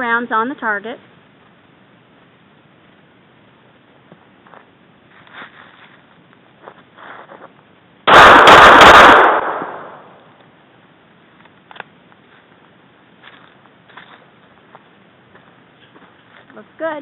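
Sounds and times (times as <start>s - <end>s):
pistol shots: 8.1s - 10.2s.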